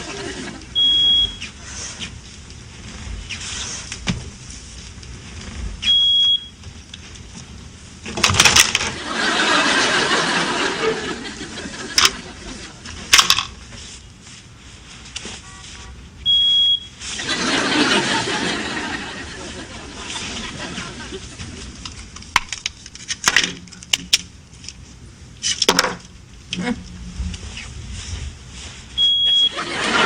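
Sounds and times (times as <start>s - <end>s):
audience laughing: 0.0s - 0.8s, 8.9s - 13.0s, 17.0s - 21.8s, 29.5s - 30.0s
smoke detector beeps: 0.7s - 1.6s, 5.8s - 6.6s, 15.4s - 17.0s, 29.0s - 29.6s.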